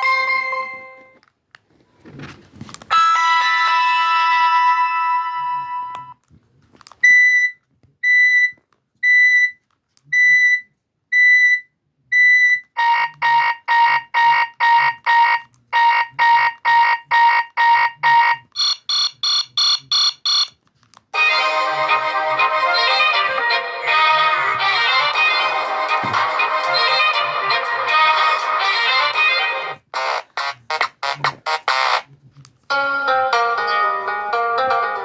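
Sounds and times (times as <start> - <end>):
melodic ringtone: 2.9 - 6.1, 12.8 - 18.4, 21.2 - 29.8, 32.7 - 35.0.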